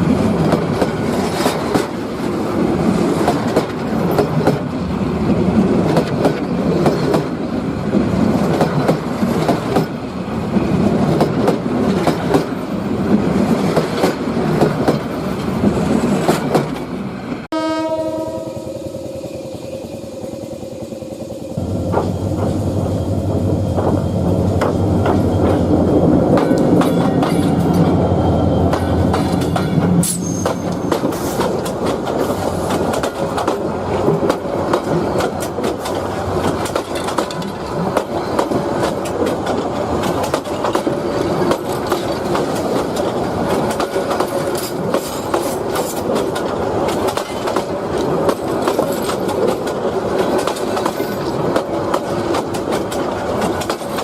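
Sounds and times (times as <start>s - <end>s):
train wheels clattering over rails: 0.0s - 17.0s, 19.4s - 54.0s
train engine hum: 0.0s - 54.0s.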